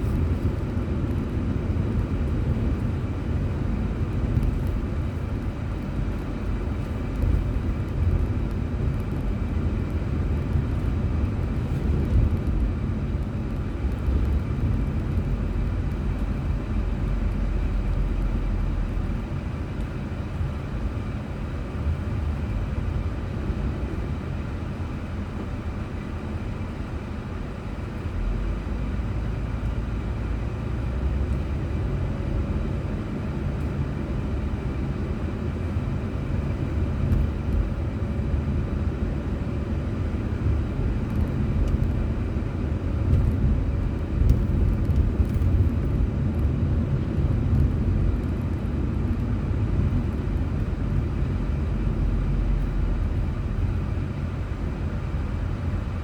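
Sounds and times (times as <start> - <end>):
car engine and tyre rumble: 0.0 - 56.0.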